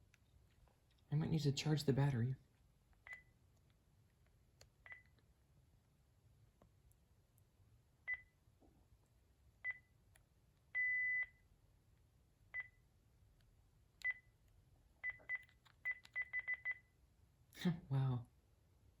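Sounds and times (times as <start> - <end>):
phone handset key beeps: 15.0 - 16.8.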